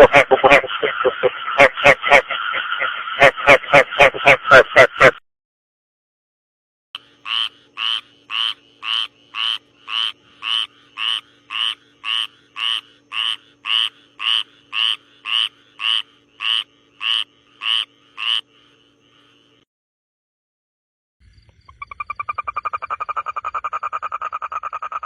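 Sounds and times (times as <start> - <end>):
frog croaking: 0.0 - 5.1, 7.0 - 19.6, 21.2 - 25.0
faint steady hum: 7.0 - 19.6.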